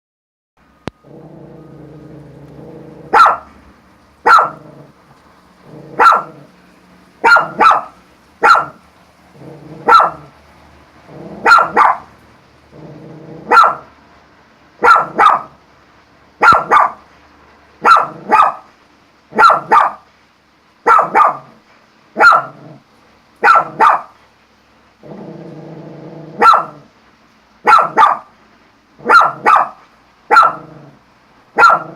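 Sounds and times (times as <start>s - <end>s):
dog growling: 1.0s - 3.4s, 4.3s - 5.0s, 5.6s - 6.6s, 8.6s - 10.4s, 11.0s - 12.0s, 12.7s - 13.9s, 17.8s - 18.6s, 22.2s - 22.9s, 25.0s - 26.9s, 30.3s - 31.0s
dog barking: 3.1s - 3.5s, 4.2s - 4.7s, 5.9s - 6.5s, 7.2s - 8.8s, 9.8s - 10.3s, 11.4s - 12.1s, 13.4s - 13.9s, 14.8s - 15.6s, 16.4s - 17.0s, 17.8s - 18.7s, 19.3s - 20.1s, 20.8s - 21.6s, 22.2s - 22.8s, 23.4s - 24.2s, 26.4s - 26.9s, 27.6s - 28.3s, 29.0s - 30.7s, 31.6s - 31.9s.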